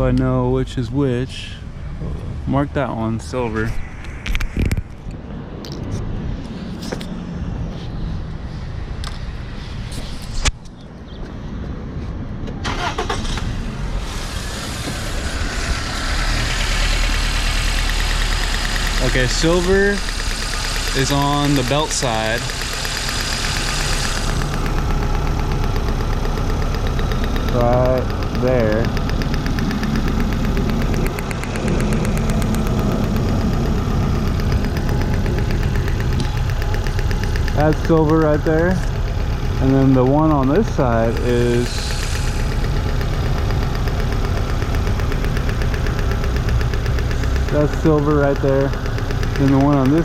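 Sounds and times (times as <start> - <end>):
car engine running: 0.0 - 10.5, 11.6 - 50.0
car engine cranking and starting: 12.4 - 50.0
fast regular ticking: 14.1 - 50.0.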